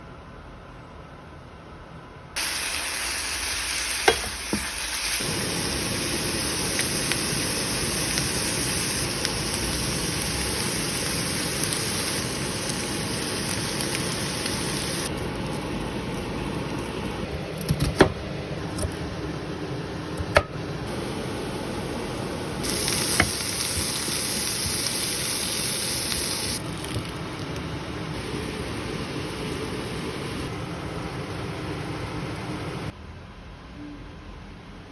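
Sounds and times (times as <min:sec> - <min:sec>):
food sizzling in a frying pan: 0:02.4 - 0:17.3, 0:20.9 - 0:27.2, 0:28.2 - 0:30.6.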